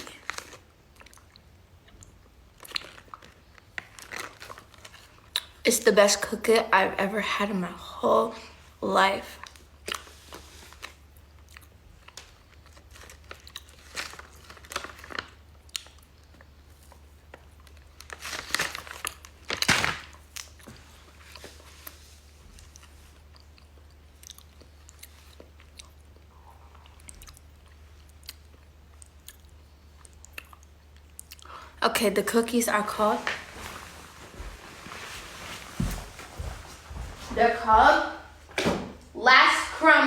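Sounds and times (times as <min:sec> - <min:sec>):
person chewing a cookie: 0:00.1 - 0:05.6, 0:09.4 - 0:18.2, 0:22.6 - 0:31.6.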